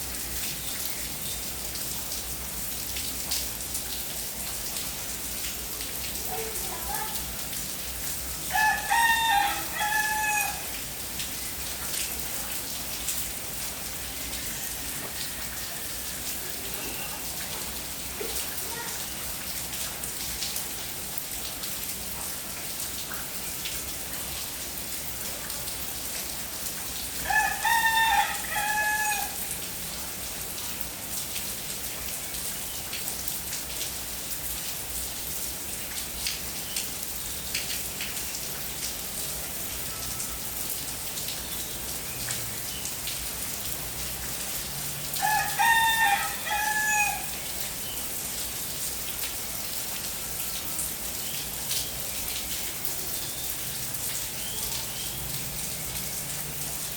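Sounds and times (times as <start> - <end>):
steady rain falling: 0.0 - 56.9
rooster crowing: 8.5 - 10.8, 14.9 - 16.4, 27.2 - 29.4, 45.1 - 47.4.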